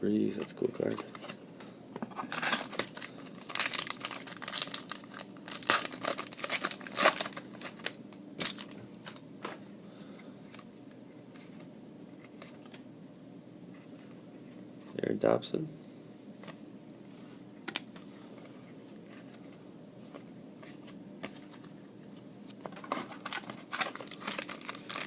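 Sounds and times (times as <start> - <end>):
foil wrapper crinkling and tearing: 2.3 - 9.2, 22.9 - 25.0.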